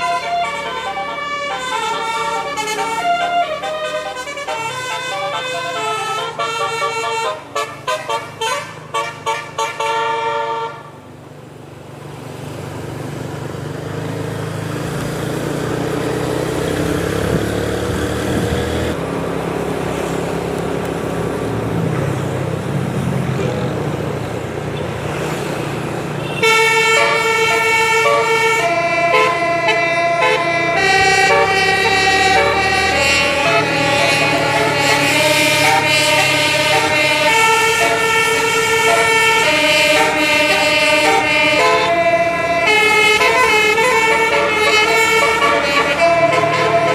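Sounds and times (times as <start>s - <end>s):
bus horn melody: 0.0s - 11.0s, 26.1s - 46.9s
vehicle and road noise: 0.0s - 46.9s.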